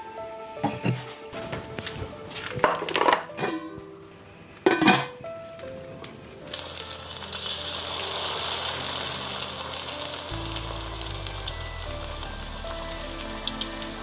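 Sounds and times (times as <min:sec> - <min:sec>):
background music: 0:00.0 - 0:14.0
food sizzling in hot oil: 0:06.3 - 0:14.0.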